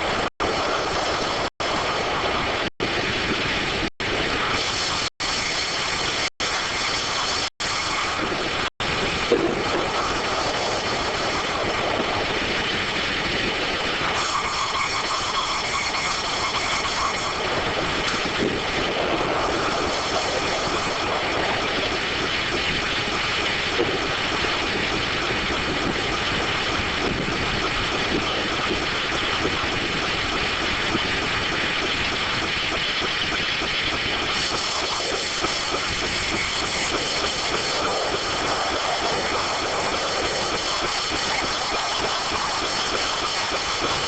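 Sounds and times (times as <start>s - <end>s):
dense machine noise: 0.0s - 44.0s
sawblades whining: 14.1s - 18.3s.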